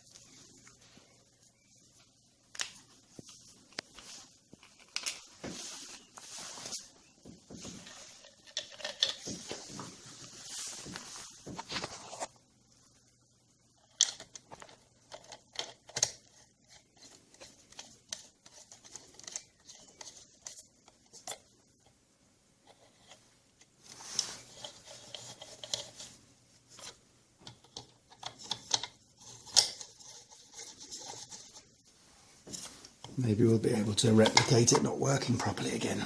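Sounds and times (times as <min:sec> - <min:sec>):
rustling: 0:00.0 - 0:21.5, 0:22.6 - 0:27.0, 0:28.1 - 0:34.9.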